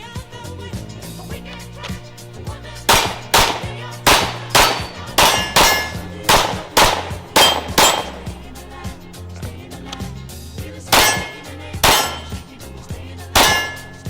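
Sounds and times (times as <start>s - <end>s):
pistol shots with metallic ring: 2.8s - 8.7s, 10.9s - 14.0s.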